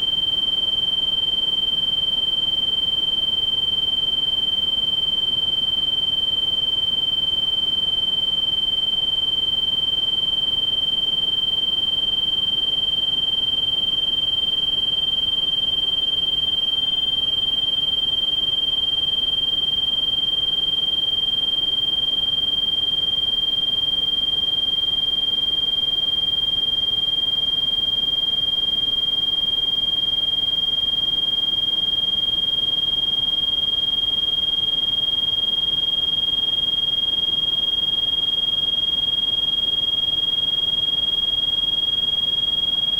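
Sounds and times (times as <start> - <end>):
high-pitched electronic sine tone: 0.0 - 42.9.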